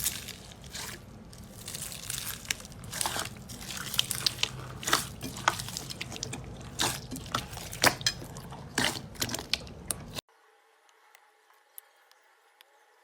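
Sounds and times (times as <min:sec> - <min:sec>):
slime squelching by hand: 0:00.0 - 0:10.2.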